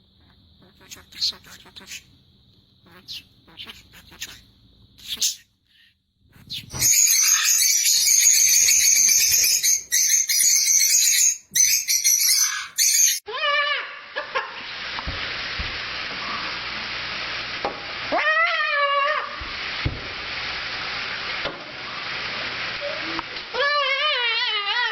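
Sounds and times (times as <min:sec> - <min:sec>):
parrot screeching: 0:02.9 - 0:04.4, 0:06.4 - 0:13.9, 0:18.1 - 0:19.4
steady hiss: 0:14.4 - 0:18.2, 0:18.8 - 0:23.6.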